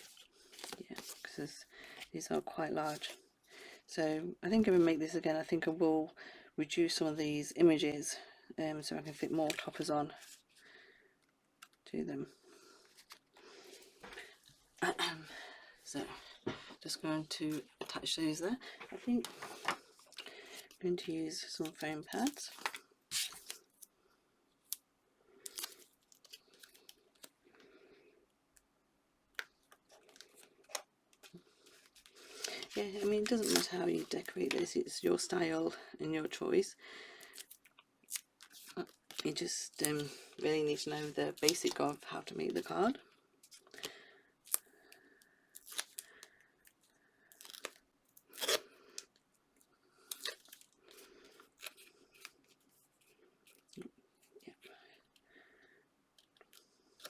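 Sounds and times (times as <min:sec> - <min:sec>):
paper rustling: 0:00.0 - 0:02.1, 0:18.7 - 0:20.8, 0:21.6 - 0:23.8, 0:29.6 - 0:34.7.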